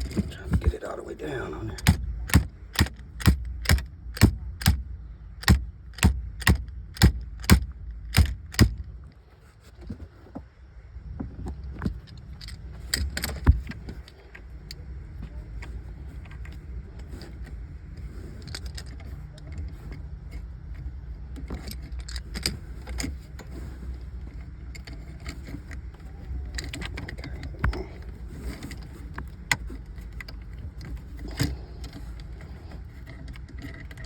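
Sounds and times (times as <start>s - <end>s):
sharp metal clicks: 1.8s - 9.0s.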